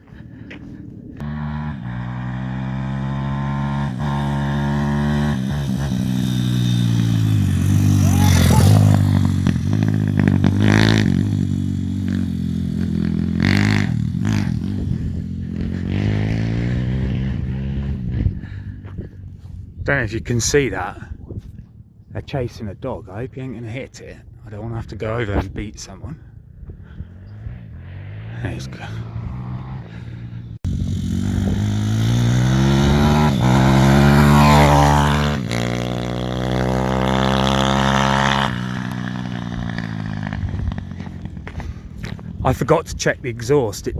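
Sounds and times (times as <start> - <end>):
motorbike engine revving: 1.2 - 18.9, 26.8 - 42.5.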